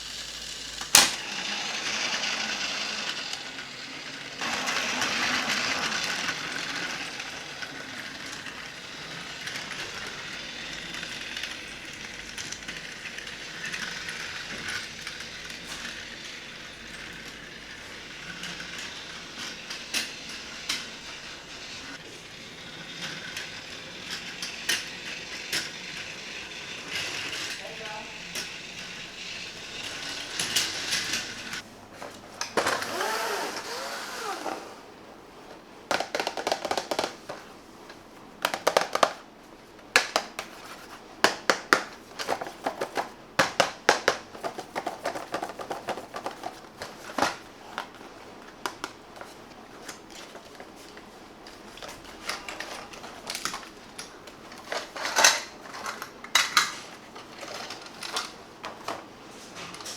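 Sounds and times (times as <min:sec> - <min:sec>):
small motor whirr: 0:00.0 - 0:31.6, 0:32.6 - 0:34.9
plastic toys clicking and clacking: 0:00.1 - 0:31.6, 0:35.9 - 0:37.5, 0:38.4 - 0:39.2, 0:39.9 - 0:59.9.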